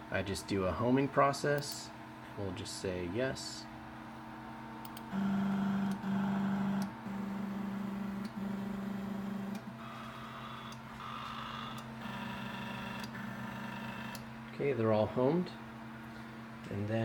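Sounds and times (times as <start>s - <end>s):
stepper motors whining: 5.1s - 14.2s.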